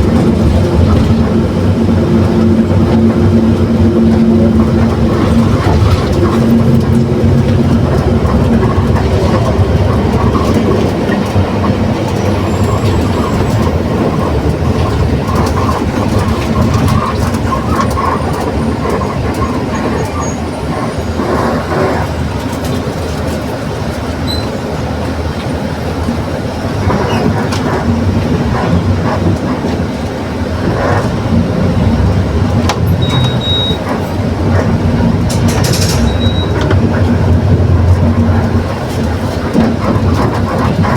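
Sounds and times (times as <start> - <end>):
differential growling drone: 0.0 - 18.4
bus engine running: 0.0 - 40.9
rattles and clicks: 0.0 - 40.9.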